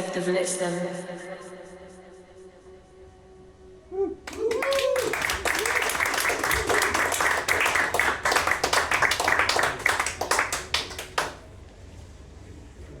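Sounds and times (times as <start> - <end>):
audience clapping: 4.2 - 11.5.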